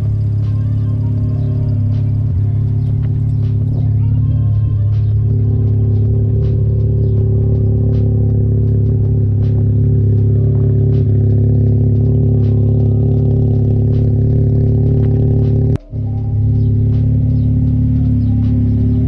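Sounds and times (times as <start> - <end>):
rotary engine idling: 0.0 - 19.0.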